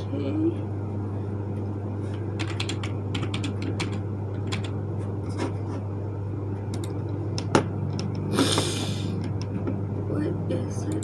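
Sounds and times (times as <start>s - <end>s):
steady low hum: 0.0s - 11.0s
computer keyboard typing: 2.4s - 4.8s, 6.7s - 7.0s.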